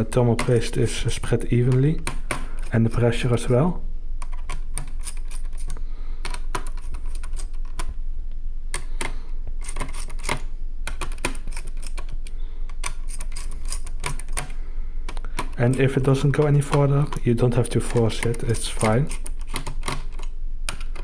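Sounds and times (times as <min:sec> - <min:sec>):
screwdriver clicking on screws: 0:12.8 - 0:14.5.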